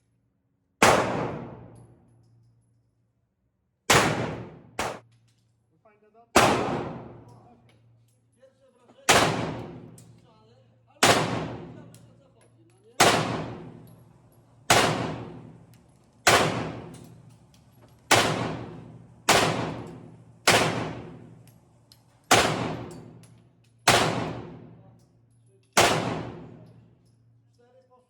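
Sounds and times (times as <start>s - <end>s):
submachine gun single shots: 0.8s - 1.7s, 3.9s - 5.0s, 6.4s - 7.3s, 9.1s - 10.0s, 11.0s - 11.9s, 13.0s - 13.9s, 14.7s - 15.6s, 16.2s - 17.3s, 18.1s - 21.4s, 22.3s - 23.2s, 23.8s - 24.8s, 25.8s - 26.6s.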